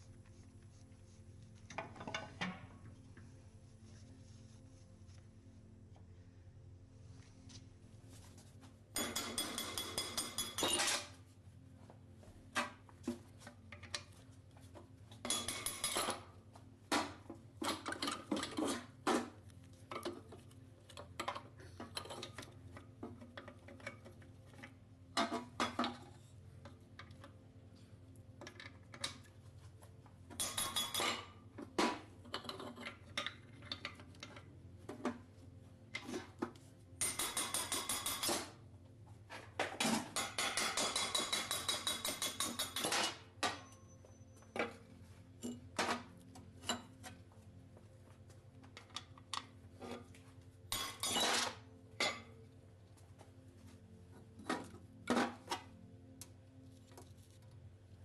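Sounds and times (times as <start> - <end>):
metal parts clinking and clattering: 50.8 - 52.2.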